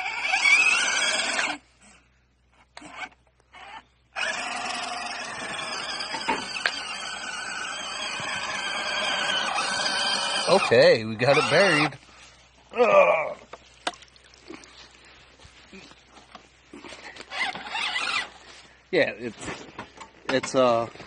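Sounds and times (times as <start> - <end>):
toy truck electric motor whining: 0.0 - 1.6, 2.6 - 12.0, 17.3 - 18.4.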